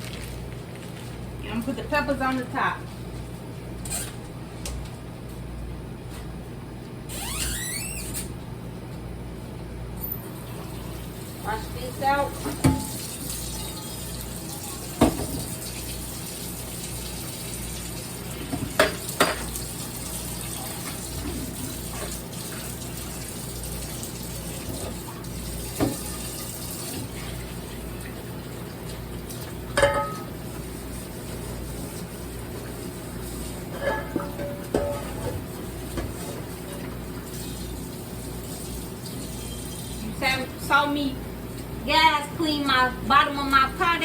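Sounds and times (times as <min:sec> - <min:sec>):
water running from tap: 0:10.3 - 0:33.7, 0:34.7 - 0:40.6
pot knocking against sink: 0:12.4 - 0:13.0, 0:15.0 - 0:15.6, 0:18.5 - 0:19.5, 0:25.8 - 0:26.2, 0:29.8 - 0:30.3, 0:33.8 - 0:36.3.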